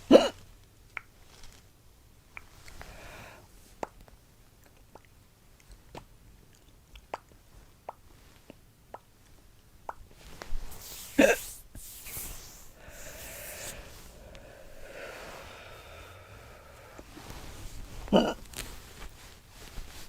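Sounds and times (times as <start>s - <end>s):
soft noise: 10.0s - 20.0s
girl hiccuping: 18.1s - 18.4s.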